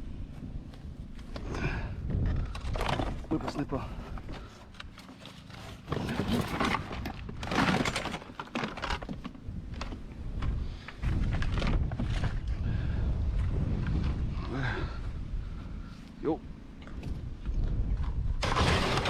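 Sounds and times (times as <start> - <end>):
steady low rumble: 0.0 - 5.0, 9.3 - 18.4
junk knocking and rustling: 1.1 - 12.6.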